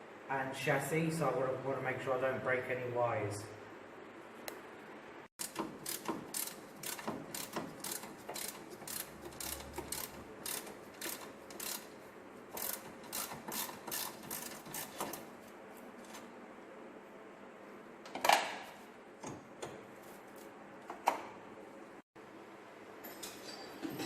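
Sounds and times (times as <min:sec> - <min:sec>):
ratchet wrench clicking: 0:05.4 - 0:12.0, 0:12.6 - 0:15.2.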